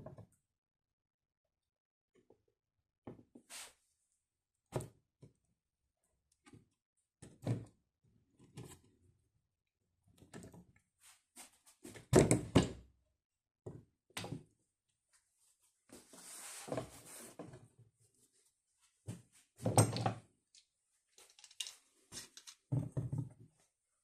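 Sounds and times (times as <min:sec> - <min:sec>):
knocks and thuds in room: 0:11.9 - 0:12.9, 0:22.7 - 0:23.5.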